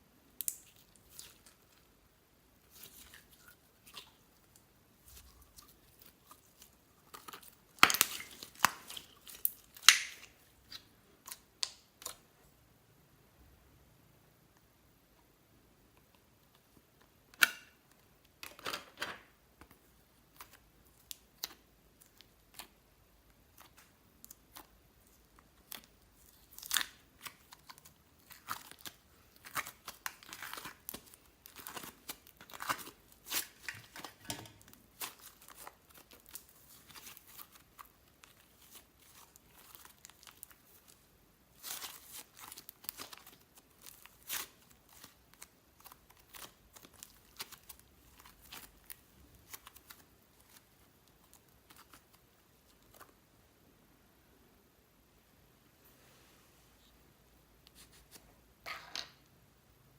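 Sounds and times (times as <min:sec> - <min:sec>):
slime squished by hand: 0:23.4 - 0:53.1.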